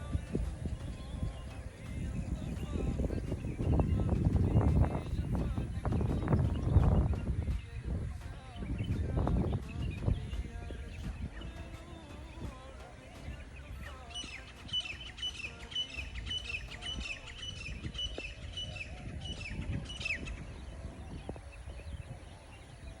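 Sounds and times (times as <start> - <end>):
low background rumble: 0.0 - 14.7
songbird singing high notes: 0.0 - 23.0.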